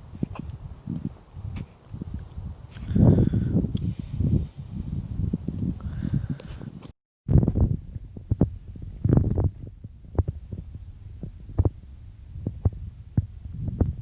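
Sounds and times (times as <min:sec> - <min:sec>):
muffled low thumping: 0:07.3 - 0:14.0.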